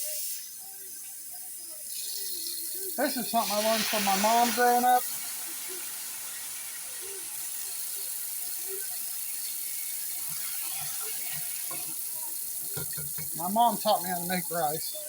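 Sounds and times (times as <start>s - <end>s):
tap water filling container: 9.8s - 14.8s.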